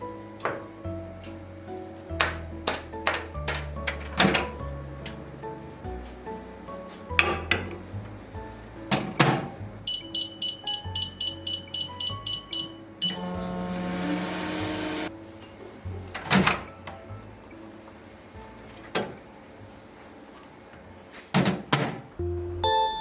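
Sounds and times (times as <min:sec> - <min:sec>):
background music: 0:00.0 - 0:19.8, 0:22.2 - 0:23.0
microwave keypad beeps: 0:09.9 - 0:13.4, 0:22.6 - 0:23.0
microwave oven humming: 0:13.1 - 0:15.1.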